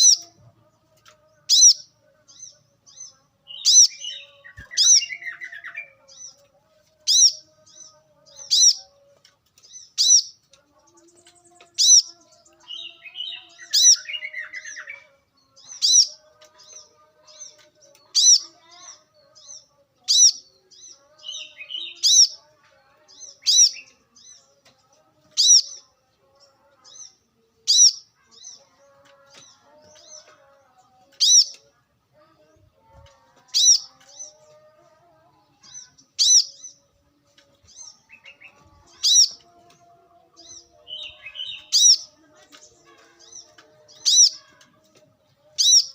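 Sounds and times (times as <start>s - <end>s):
bird high chirp: 0.0s - 31.7s, 32.8s - 45.9s.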